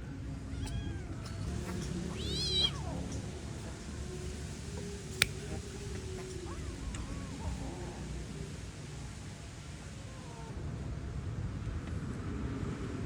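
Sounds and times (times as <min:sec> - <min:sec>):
cat meowing: 0:00.5 - 0:01.3, 0:02.1 - 0:03.0.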